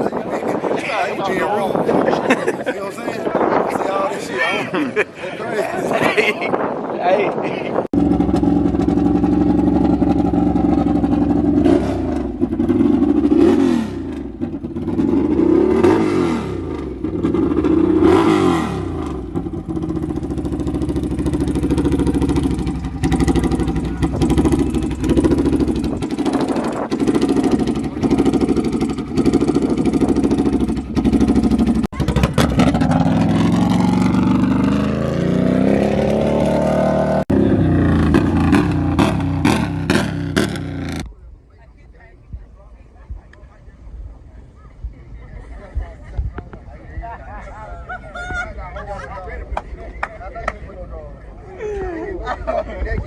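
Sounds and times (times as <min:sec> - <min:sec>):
quad bike engines revving: 0:07.9 - 0:41.1.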